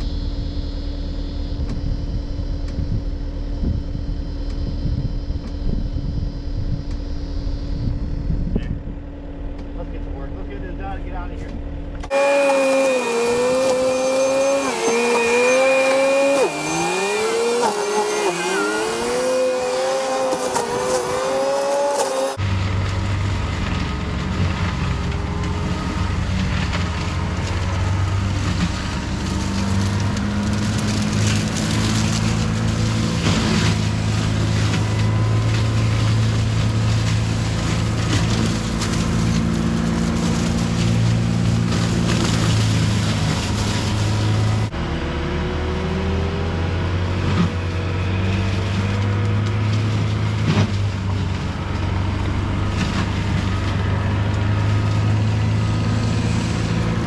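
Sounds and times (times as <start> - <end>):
diesel engine running at high revs: 0.0 - 57.0
mulcher grinding brush: 12.0 - 22.4, 26.5 - 44.7
wood cracking: 12.1 - 22.4.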